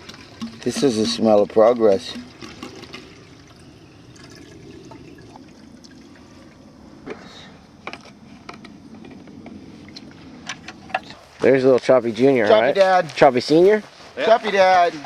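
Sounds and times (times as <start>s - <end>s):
liquid pouring: 0.0s - 6.6s.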